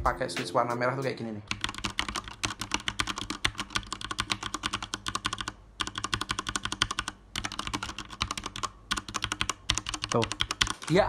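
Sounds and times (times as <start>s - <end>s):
mechanical keyboard typing: 1.5s - 11.0s.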